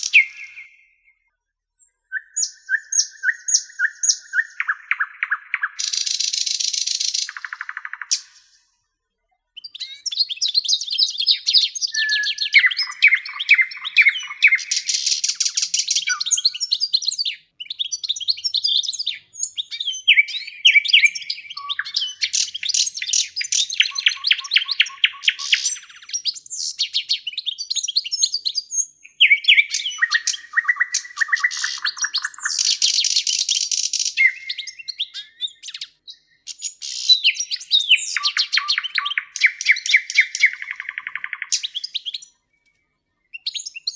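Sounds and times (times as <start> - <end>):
songbird singing trills: 0.0 - 1.2, 1.8 - 8.6, 9.6 - 43.9.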